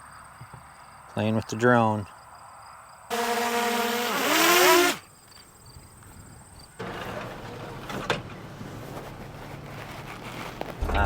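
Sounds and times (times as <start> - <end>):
drone propellers buzzing: 3.1 - 5.0.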